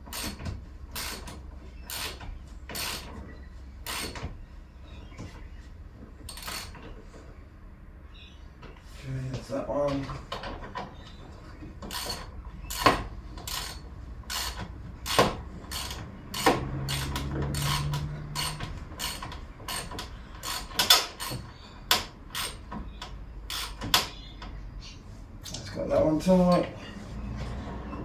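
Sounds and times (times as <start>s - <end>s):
socket ratchet clicking: 11.9s - 22.6s, 23.5s - 24.1s.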